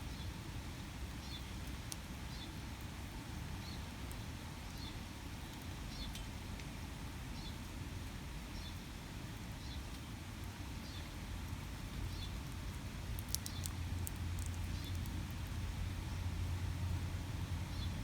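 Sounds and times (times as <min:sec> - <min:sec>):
squirrel cracking seed shells: 0:12.3 - 0:15.8.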